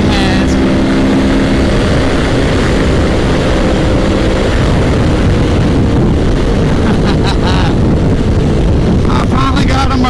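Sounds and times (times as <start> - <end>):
motorcycle engine humming: 0.0 - 10.0
wind rush on microphone: 0.0 - 10.0.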